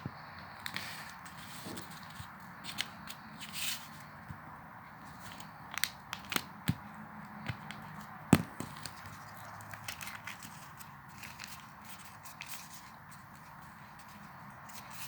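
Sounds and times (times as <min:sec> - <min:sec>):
paper crackling: 0:00.6 - 0:04.2, 0:05.0 - 0:15.0
paper snap: 0:05.3 - 0:10.5.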